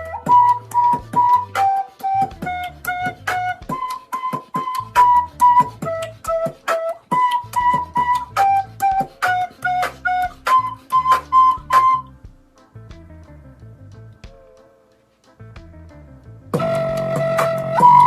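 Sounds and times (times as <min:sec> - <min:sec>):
flute-like melody: 0:00.0 - 0:12.6, 0:16.5 - 0:18.0
sharp percussive beat: 0:00.0 - 0:13.3, 0:16.6 - 0:18.0
low bass line: 0:11.3 - 0:14.3, 0:15.4 - 0:18.0.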